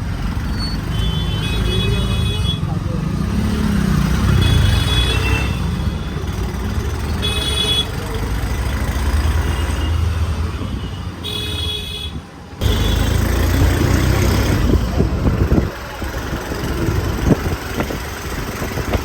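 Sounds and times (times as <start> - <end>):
vehicle engines rumbling: 0.0 - 19.0
car horn honking: 4.3 - 6.3, 7.1 - 8.0, 9.5 - 13.2.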